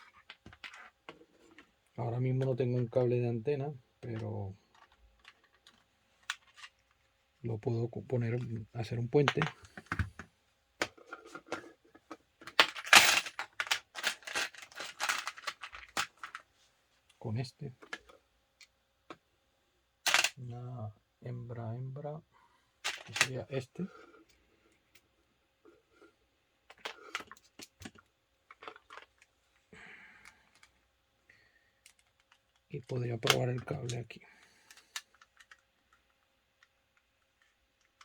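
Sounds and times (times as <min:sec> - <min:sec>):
connectors clicking and tapping: 0:09.2 - 0:16.4.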